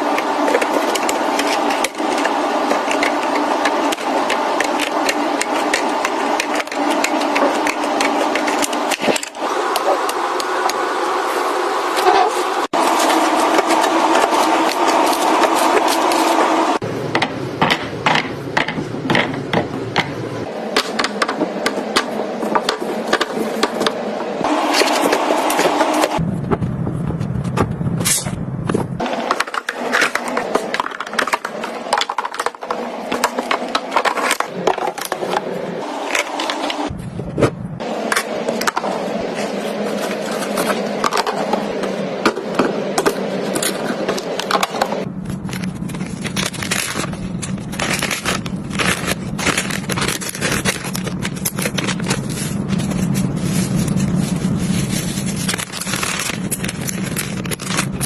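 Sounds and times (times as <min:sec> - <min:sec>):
household items clattering: 0:00.0 - 0:10.7, 0:29.0 - 0:58.0.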